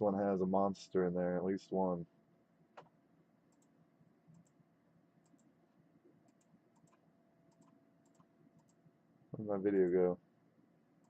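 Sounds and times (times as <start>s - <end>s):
mouse and keyboard clicks: 6.3s - 8.8s.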